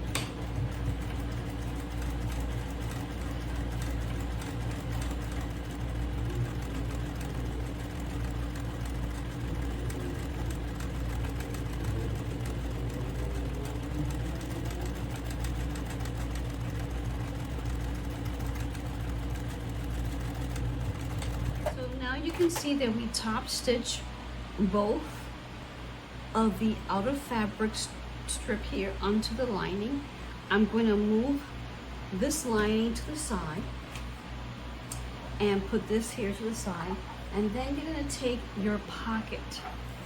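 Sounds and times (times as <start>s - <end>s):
sewing machine running: 0.0s - 22.6s.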